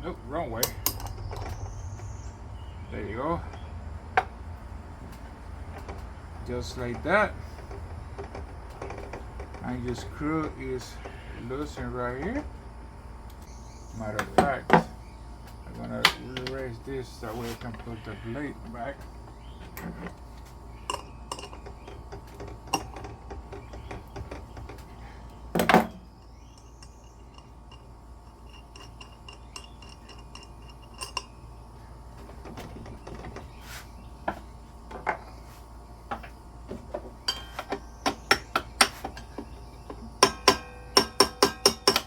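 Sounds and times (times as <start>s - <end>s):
metal tools clinking: 20.8s - 31.5s, 37.2s - 42.0s.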